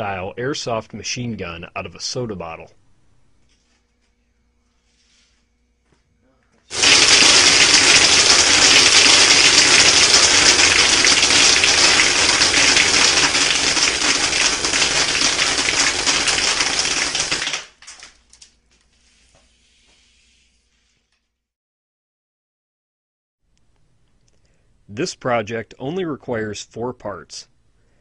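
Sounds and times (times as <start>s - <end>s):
rapid rattle of pellets: 6.7s - 17.7s.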